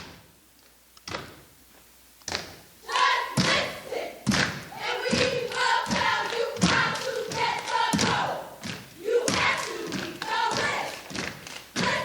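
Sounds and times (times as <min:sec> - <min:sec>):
voices shouting a chant: 0:02.8 - 0:11.1, 0:11.8 - 0:12.0
hands clapping: 0:05.2 - 0:12.0.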